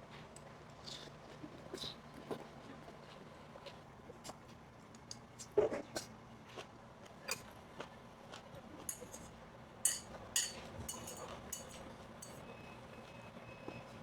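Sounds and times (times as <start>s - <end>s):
utensils clinking against dishes: 8.8s - 12.4s.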